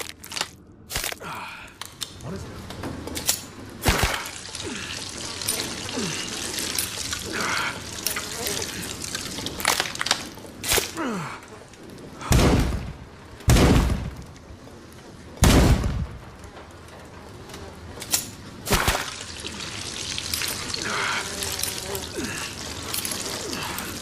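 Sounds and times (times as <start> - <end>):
rifle shots: 13.5 - 14.2.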